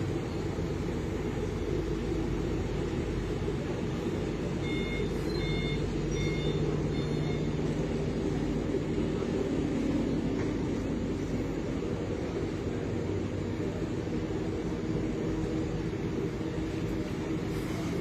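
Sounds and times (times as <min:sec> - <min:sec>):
boat diesel engine drone: 0:00.0 - 0:18.0
short electronic beeps: 0:04.6 - 0:07.8.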